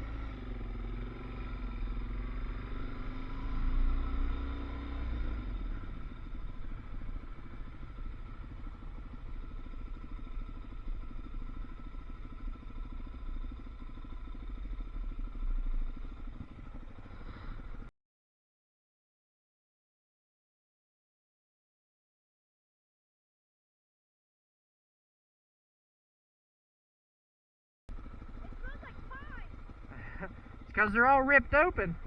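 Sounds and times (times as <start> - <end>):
vehicle engine revving: 0.0 - 17.9.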